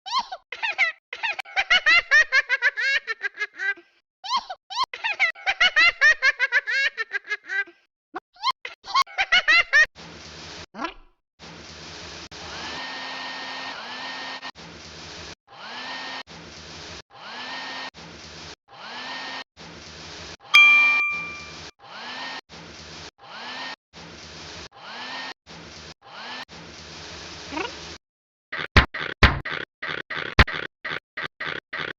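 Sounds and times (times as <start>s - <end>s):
high-pitched laughter: 0.1s - 7.8s, 8.4s - 9.9s
bright ding: 20.6s - 21.7s.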